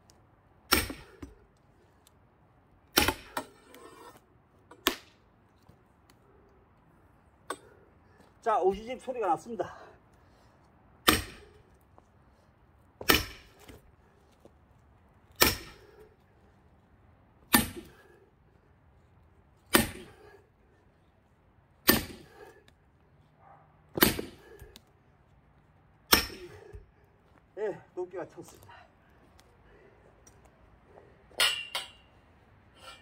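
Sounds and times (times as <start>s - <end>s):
hammer striking axe in log: 0.7s - 1.3s, 2.9s - 3.5s, 11.0s - 11.4s, 13.0s - 13.6s, 15.4s - 15.8s, 17.5s - 17.9s, 19.7s - 20.1s, 21.8s - 22.3s, 24.0s - 24.4s, 26.1s - 26.8s.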